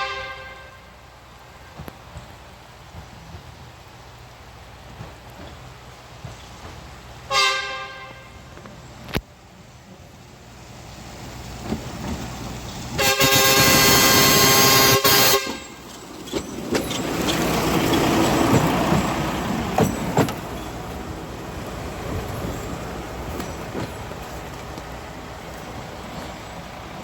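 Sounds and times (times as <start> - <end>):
train horn blast: 0.0 - 1.9, 7.3 - 8.5, 13.0 - 15.8
train rumbling past: 0.0 - 27.0
wheels clicking over rails: 14.7 - 27.0.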